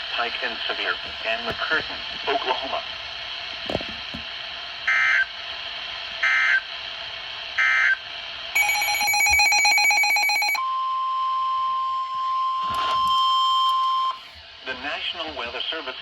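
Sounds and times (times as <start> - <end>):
steady alarm tone: 8.6 - 14.3.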